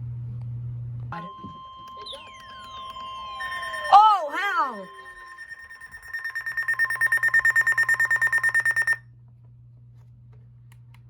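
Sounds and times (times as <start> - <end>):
electronic alert tone beeping: 1.2 - 9.0.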